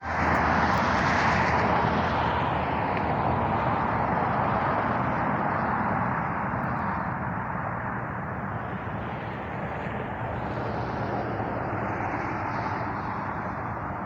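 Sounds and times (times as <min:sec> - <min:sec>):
freight train passing: 0:07.1 - 0:14.0.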